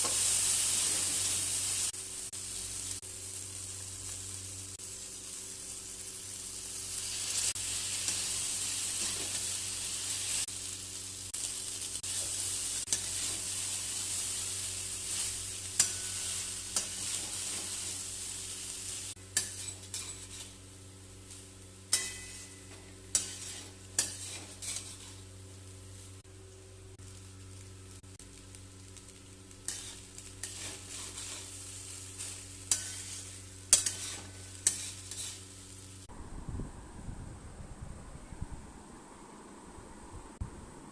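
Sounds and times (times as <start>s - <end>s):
rice sizzling in a pan: 0.0s - 36.1s
spatula scraping and knocking pan: 19.4s - 20.5s, 21.9s - 25.2s, 29.7s - 31.5s, 32.2s - 35.4s.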